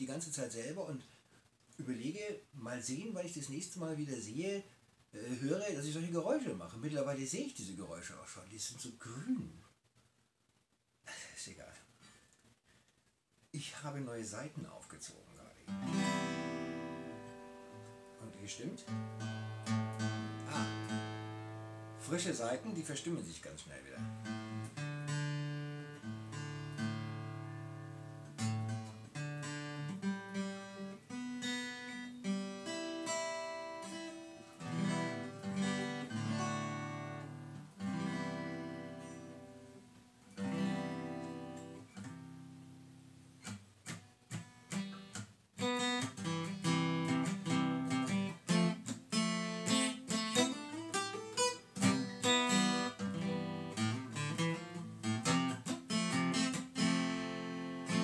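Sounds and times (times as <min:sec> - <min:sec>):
acoustic guitar playing: 0:15.7 - 0:58.0.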